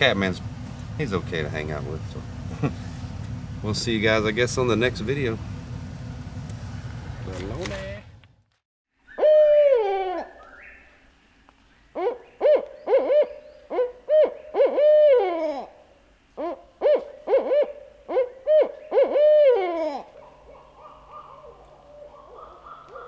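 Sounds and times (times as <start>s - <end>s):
owl hooting: 9.1s - 11.0s, 11.9s - 23.0s.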